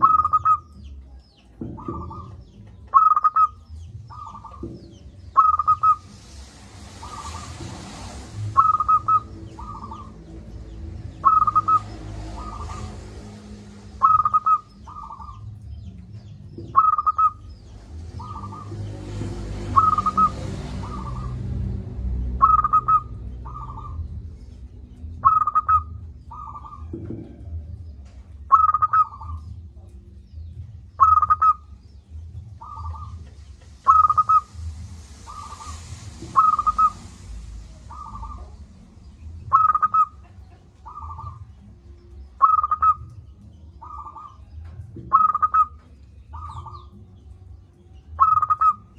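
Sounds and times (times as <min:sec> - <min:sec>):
dove cooing: 0:00.0 - 0:00.8, 0:01.6 - 0:06.1, 0:08.5 - 0:10.2, 0:11.2 - 0:15.5, 0:16.7 - 0:17.4, 0:19.7 - 0:21.4, 0:22.4 - 0:24.0, 0:25.2 - 0:27.6, 0:28.5 - 0:29.5, 0:31.0 - 0:31.6, 0:32.6 - 0:34.5, 0:35.3 - 0:37.0, 0:39.5 - 0:41.6, 0:42.4 - 0:44.4, 0:45.1 - 0:46.9.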